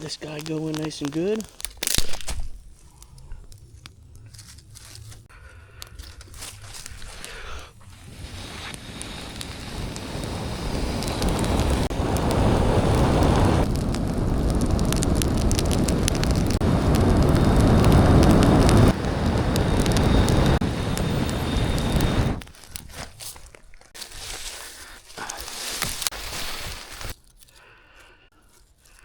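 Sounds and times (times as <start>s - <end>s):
campfire crackling and popping: 0.0s - 27.4s
wind rumble on microphone: 6.3s - 23.0s.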